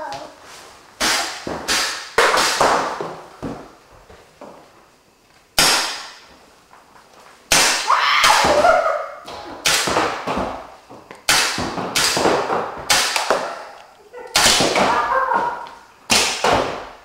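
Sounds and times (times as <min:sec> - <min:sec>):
paintball markers firing: 0:11.2 - 0:13.6.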